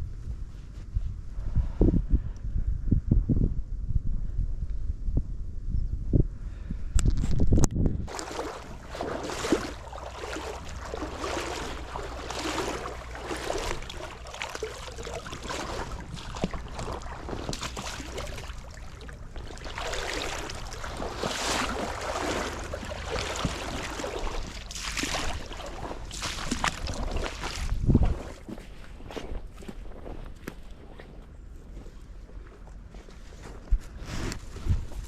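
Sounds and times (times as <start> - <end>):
wind gusting over microphone: 0.0 - 28.5
stream water flowing: 8.1 - 27.8.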